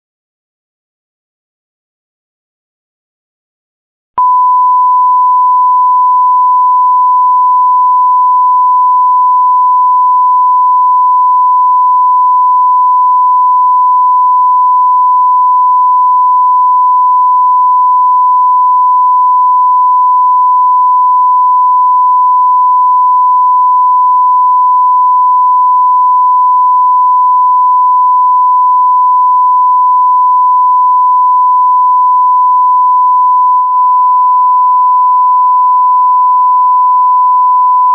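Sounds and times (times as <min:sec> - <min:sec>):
steady electronic test tone: 0:12.8 - 0:37.9.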